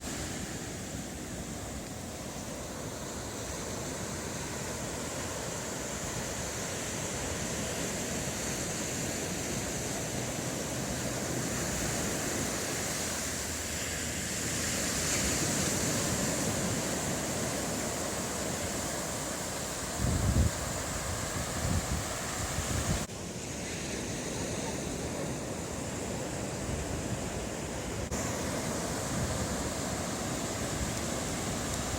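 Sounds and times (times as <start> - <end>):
surf washing onto beach: 0.0 - 31.9
wind thumps on microphone: 20.0 - 23.1.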